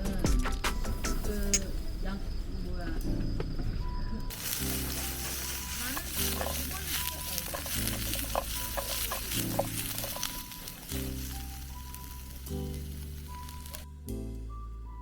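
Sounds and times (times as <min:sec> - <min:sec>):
food sizzling in a pan: 0:04.3 - 0:13.9.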